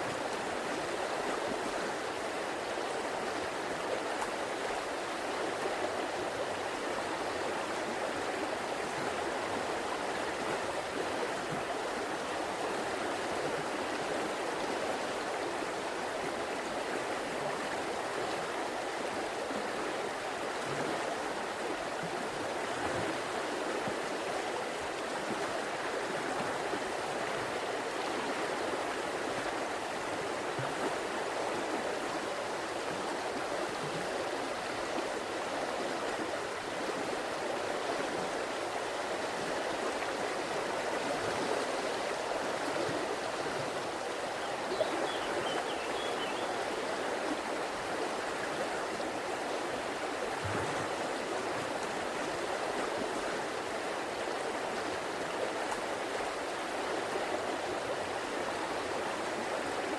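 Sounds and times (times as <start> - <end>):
river water rushing: 0.0 - 59.9.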